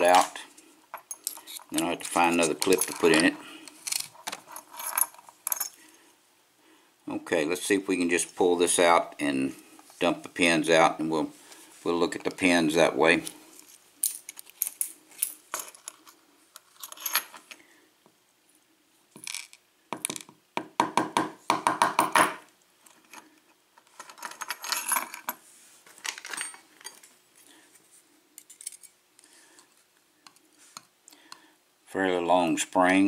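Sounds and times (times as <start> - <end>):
metal lock parts clicking: 1.0 - 5.7.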